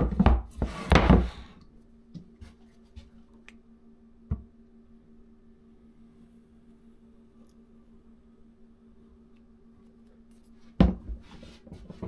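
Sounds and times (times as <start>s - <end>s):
hands scraping workpieces: 0.0s - 1.6s, 10.7s - 12.0s
faint steady hum: 0.0s - 12.0s.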